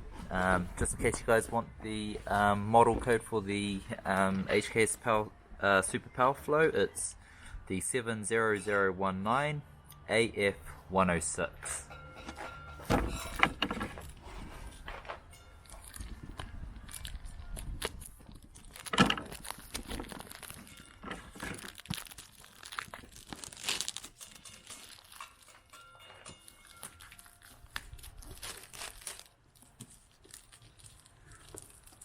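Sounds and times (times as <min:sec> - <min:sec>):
plastic wrap crinkling: 0:15.6 - 0:32.0.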